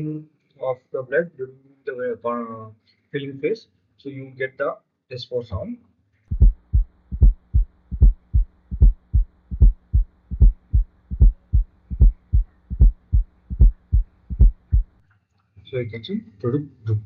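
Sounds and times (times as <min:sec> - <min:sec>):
faint steady hum: 0:05.1 - 0:15.0
heart sounds with gallop: 0:06.3 - 0:15.0.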